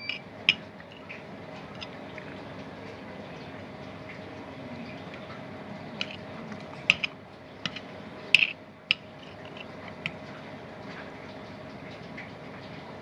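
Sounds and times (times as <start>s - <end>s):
utensils and dishes clinking: 0.0s - 2.4s, 6.0s - 10.2s
steady low hum: 0.0s - 13.0s.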